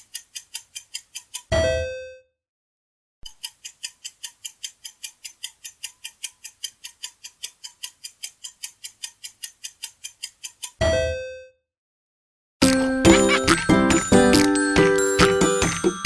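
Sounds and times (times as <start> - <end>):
clock ticking: 0.0 - 1.5, 3.3 - 10.8, 12.6 - 16.0.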